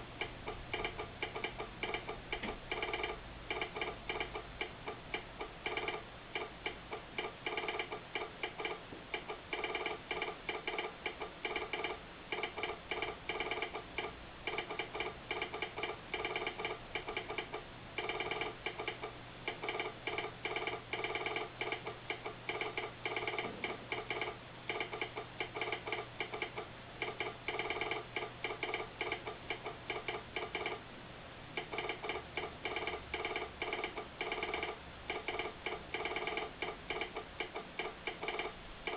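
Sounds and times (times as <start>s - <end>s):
telegraph sounder clicking: 0.0s - 30.9s, 31.6s - 38.9s.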